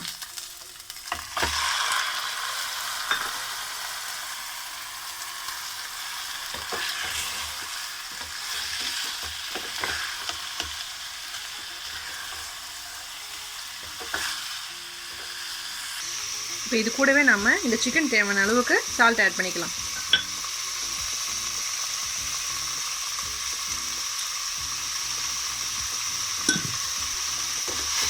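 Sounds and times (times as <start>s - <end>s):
chicken sizzling in oil: 0.0s - 28.0s
stirring clicks and scrapes in pan: 6.4s - 10.9s.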